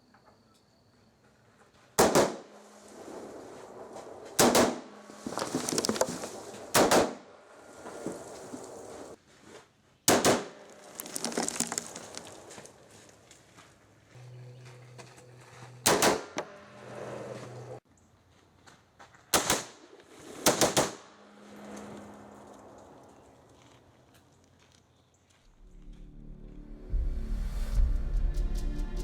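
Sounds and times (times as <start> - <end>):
rifle shots with ringing echo: 2.0 - 5.2, 6.4 - 7.9, 10.1 - 10.6, 15.8 - 16.7, 19.3 - 21.4.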